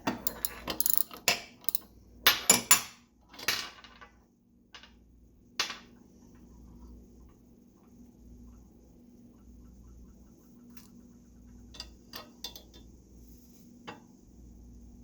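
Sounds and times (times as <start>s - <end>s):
metal parts clinking and knocking: 0.0s - 4.1s.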